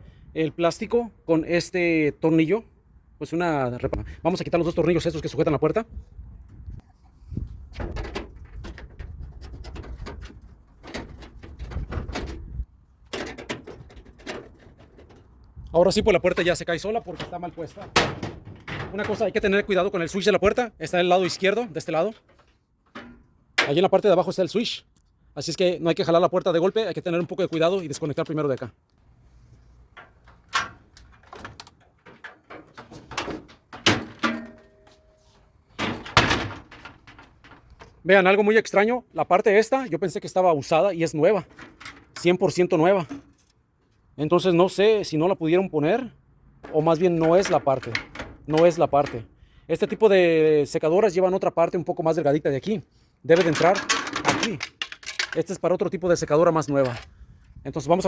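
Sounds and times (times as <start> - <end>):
plastic and metal clatter: 7.8 - 15.6, 16.2 - 19.7, 29.9 - 34.8, 35.8 - 38.0, 41.4 - 42.4, 46.6 - 49.3, 53.3 - 55.6
tool and metal parts clicking: 53.3 - 55.6.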